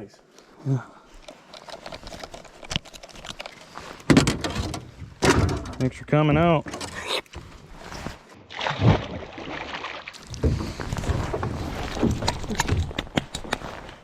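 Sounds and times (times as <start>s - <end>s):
knocks and bumps of boat: 4.1s - 6.0s, 10.3s - 13.2s.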